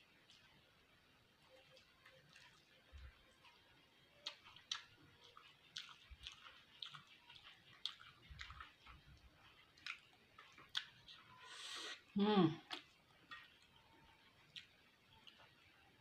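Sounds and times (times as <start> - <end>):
wet mouth chewing clicks: 4.2 - 11.0.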